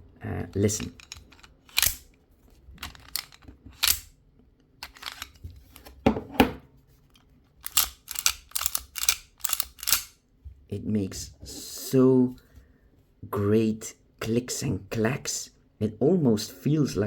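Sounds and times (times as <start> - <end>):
air pistol action clicking: 1.0 - 2.1, 3.1 - 4.1, 7.6 - 10.2.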